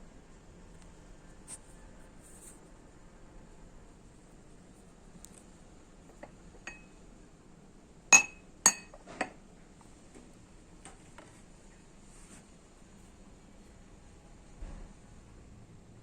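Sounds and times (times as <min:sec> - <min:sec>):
tableware clinking: 0:06.6 - 0:06.9, 0:08.1 - 0:09.3.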